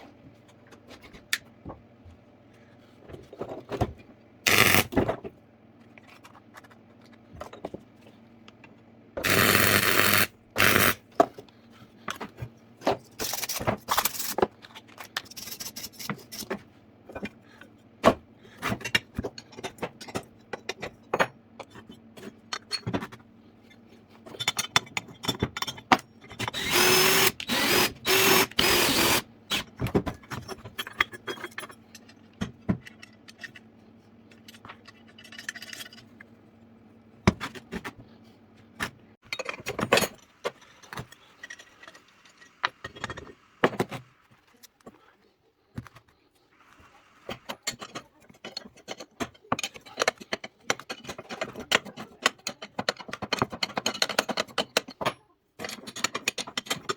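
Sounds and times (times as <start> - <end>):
power tool running: 4.5 - 5.0, 9.2 - 11.0, 26.6 - 29.6
metal tools clicking and knocking: 24.2 - 33.7, 38.8 - 44.0, 47.7 - 56.9.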